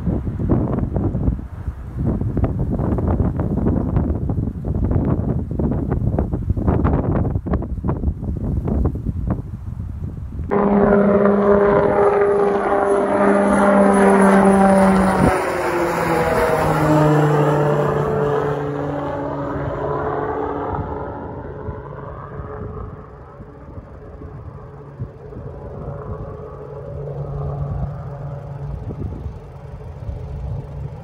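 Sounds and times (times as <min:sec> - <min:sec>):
jet aircraft passing overhead: 0:10.4 - 0:31.0.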